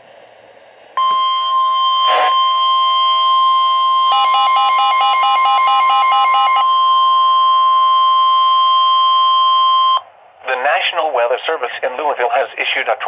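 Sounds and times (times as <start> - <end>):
fast beeping: 1.0 - 10.0
steady high warning tone: 1.0 - 10.1.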